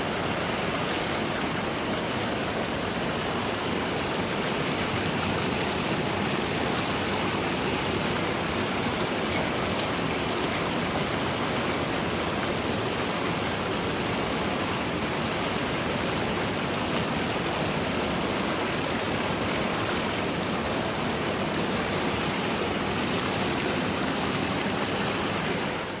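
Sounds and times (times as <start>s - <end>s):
running water: 0.0s - 26.0s.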